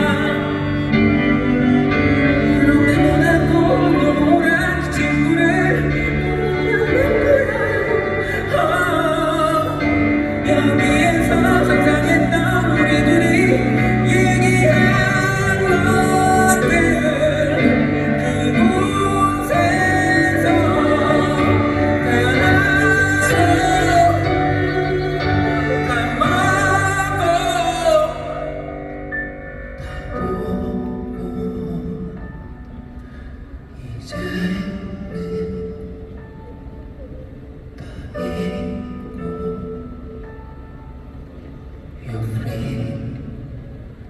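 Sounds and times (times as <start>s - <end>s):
band playing pop ballad: 0.0s - 33.1s
person singing: 0.0s - 41.4s.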